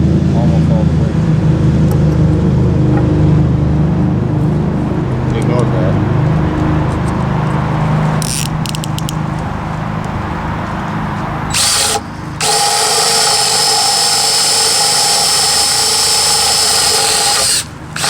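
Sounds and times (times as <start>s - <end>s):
low rumble: 0.0s - 11.6s
cordless drill motor whining: 8.2s - 9.1s, 11.5s - 18.0s
quick clicks: 8.2s - 10.2s.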